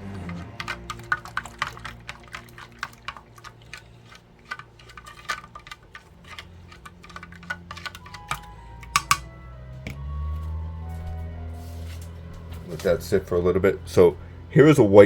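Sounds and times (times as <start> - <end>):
container of water being shaken: 0.0 - 8.2.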